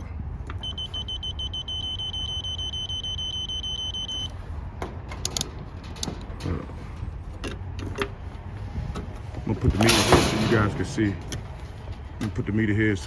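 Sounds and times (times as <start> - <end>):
high-pitched pulsing beep: 0.6 - 4.3.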